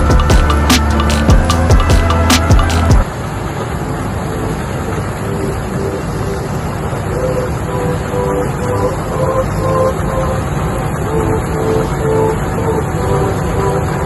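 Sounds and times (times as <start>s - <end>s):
background music: 0.0s - 3.1s, 7.2s - 14.0s.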